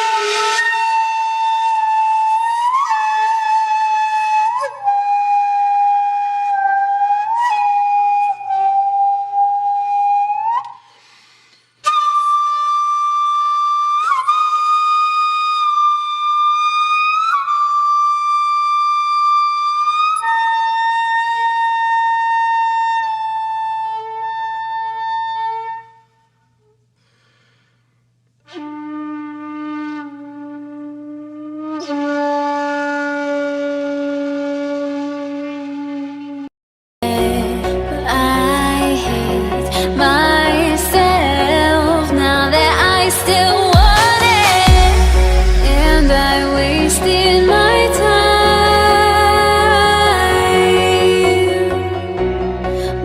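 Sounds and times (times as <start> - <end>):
slow wind instrument music: 0.0 - 10.8, 28.4 - 53.0.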